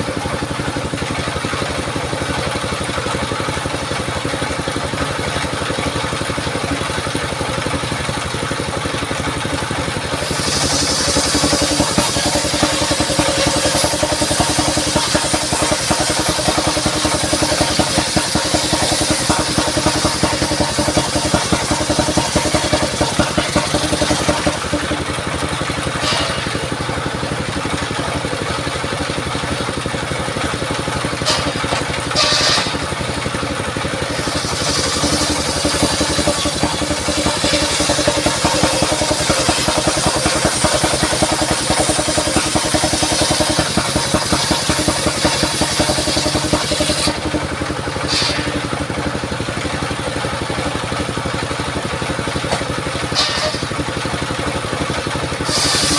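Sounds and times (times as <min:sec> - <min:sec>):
circular saw engine running: 0:00.0 - 0:55.9
saw blade cutting through log: 0:10.0 - 0:25.2, 0:25.8 - 0:26.8, 0:31.2 - 0:33.3, 0:33.9 - 0:48.8, 0:53.1 - 0:53.8, 0:55.3 - 0:55.9.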